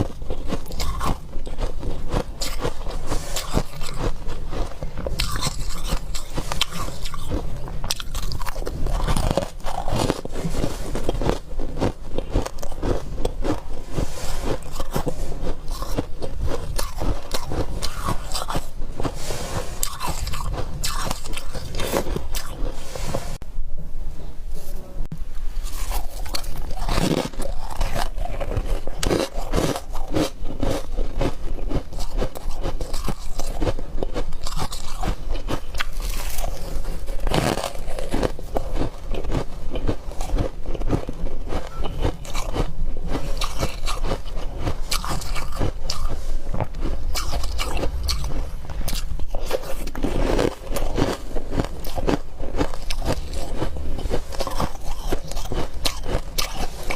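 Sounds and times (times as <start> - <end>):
chewing ice crunching: 0.0 - 22.9, 25.6 - 56.9.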